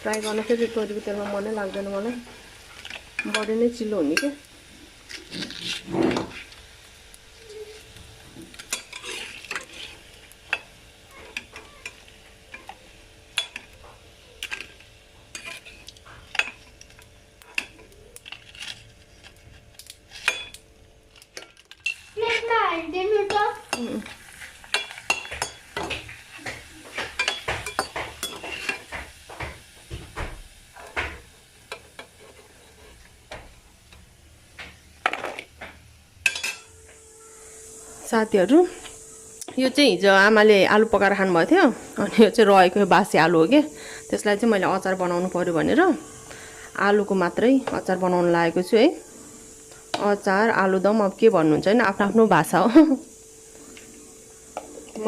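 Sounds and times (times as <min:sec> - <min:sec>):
food sizzling in hot oil: 0:00.0 - 0:55.0
metal utensil scraping a pan: 0:00.1 - 0:01.0, 0:05.1 - 0:06.6, 0:08.5 - 0:10.6, 0:15.3 - 0:16.6.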